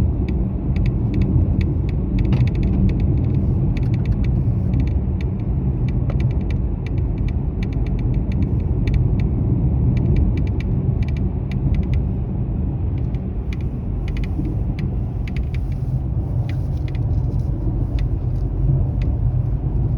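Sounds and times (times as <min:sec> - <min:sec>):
low rumble inside car cabin: 0:00.0 - 0:19.9
dashboard trim rattling clicks: 0:00.8 - 0:09.2.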